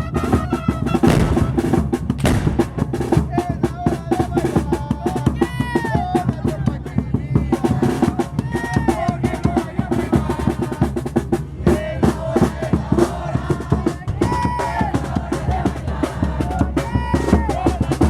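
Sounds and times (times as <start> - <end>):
wind instrument melody: 0.0 - 3.2
bass drum and snare drum: 0.0 - 18.0.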